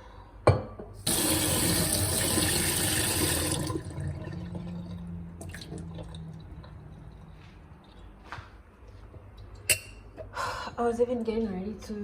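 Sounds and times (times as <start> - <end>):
tap water running into sink: 1.0 - 6.7.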